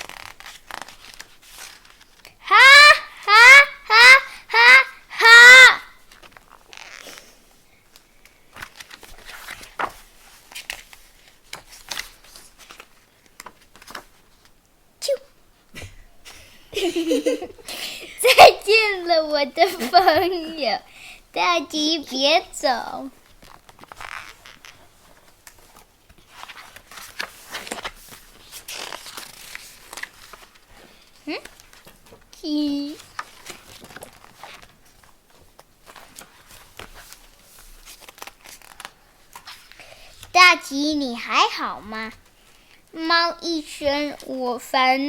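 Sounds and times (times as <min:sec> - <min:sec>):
paper rustling: 0:00.0 - 0:02.9, 0:06.0 - 0:14.6, 0:21.8 - 0:40.6.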